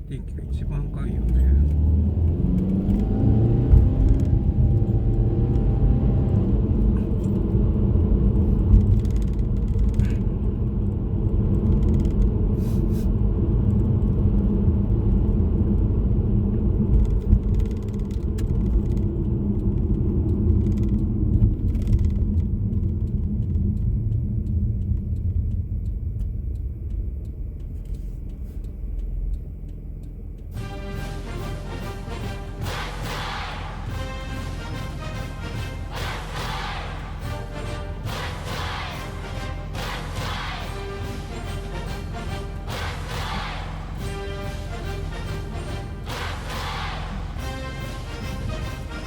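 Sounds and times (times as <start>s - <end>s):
car engine and road noise: 0.0s - 49.0s.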